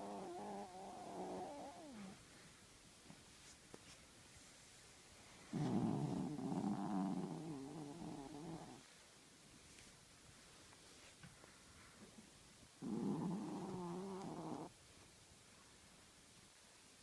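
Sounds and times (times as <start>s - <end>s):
dog snoring: 0.0s - 2.2s, 5.5s - 8.8s, 12.8s - 14.7s.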